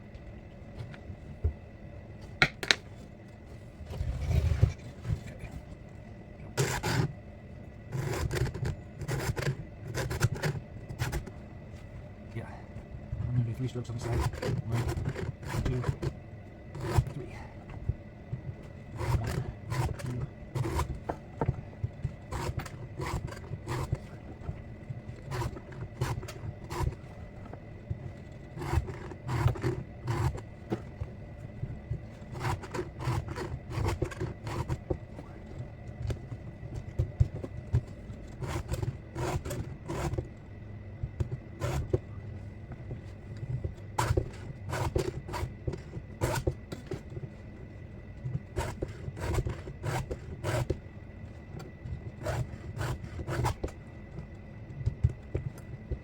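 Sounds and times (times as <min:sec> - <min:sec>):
file scraping chainsaw chain: 0:14.0 - 0:16.1, 0:19.0 - 0:21.0.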